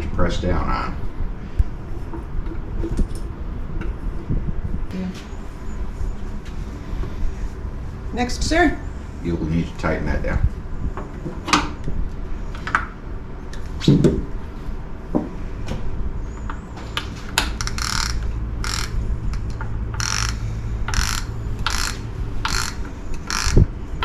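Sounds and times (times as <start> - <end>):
ratchet wrench ratcheting: 17.5 - 23.7.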